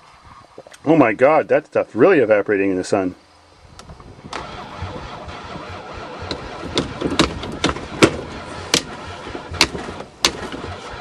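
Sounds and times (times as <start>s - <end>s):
van engine cranking: 4.2s - 11.0s
sharp irregular pops: 6.0s - 10.9s.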